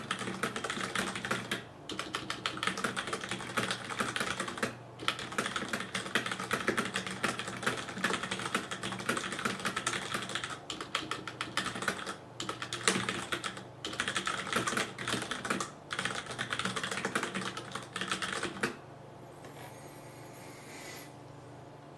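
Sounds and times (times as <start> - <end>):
fast mechanical keyboard typing: 0.0 - 18.8
faint hum: 0.0 - 21.9.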